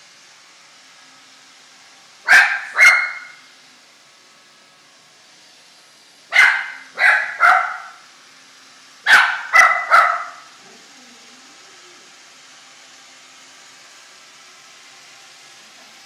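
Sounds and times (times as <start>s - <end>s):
dog barking: 2.3s - 3.4s, 6.3s - 8.0s, 9.1s - 10.5s.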